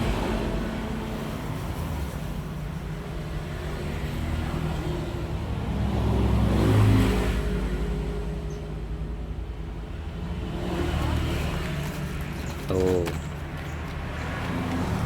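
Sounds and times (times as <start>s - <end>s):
road traffic engine hum: 0.0s - 15.0s
vehicle passing by: 3.5s - 15.0s.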